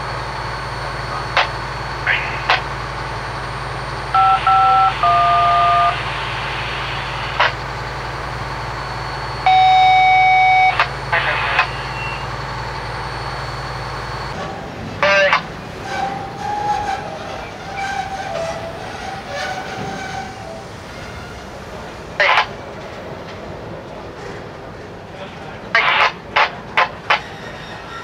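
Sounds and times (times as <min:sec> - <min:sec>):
long steady beep: 0:04.1 - 0:07.8, 0:08.8 - 0:14.4
two-tone touch-tone beeps: 0:04.2 - 0:06.0, 0:09.5 - 0:12.3
radio clicks and static bursts: 0:10.6 - 0:12.1, 0:25.8 - 0:27.2.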